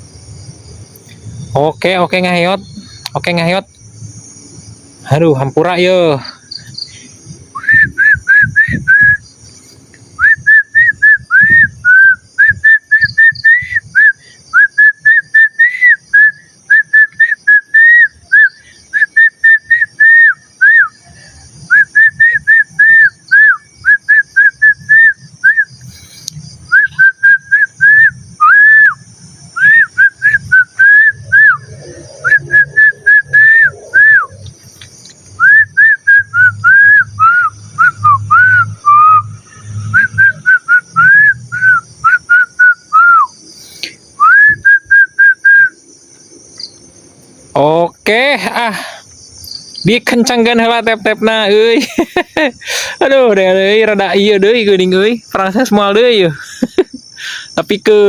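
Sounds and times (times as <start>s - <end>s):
crickets chirring: 0.0s - 58.0s
person whistling a tune: 7.6s - 9.2s, 10.2s - 21.0s, 26.7s - 29.0s, 29.6s - 34.4s, 35.4s - 43.3s, 44.2s - 45.8s.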